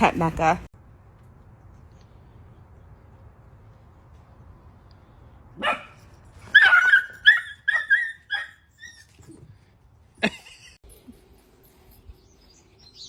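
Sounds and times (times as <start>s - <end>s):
dog yipping: 5.6s - 9.4s.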